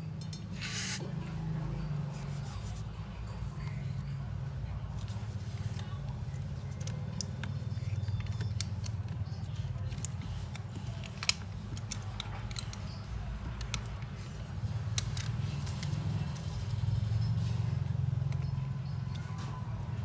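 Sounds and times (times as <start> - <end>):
small tools clicking and tapping: 6.6 - 16.8.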